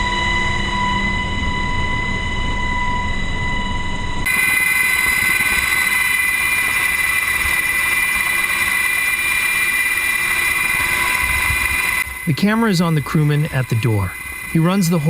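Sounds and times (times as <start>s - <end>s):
helicopter engine whine: 0.0s - 15.0s
rotor and wind rushing: 4.3s - 15.0s.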